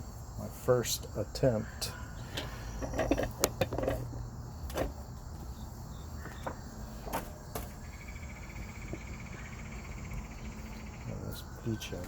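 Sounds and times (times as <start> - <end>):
insects trilling: 0.0 - 12.0
handling clicks and knocks: 2.4 - 5.0.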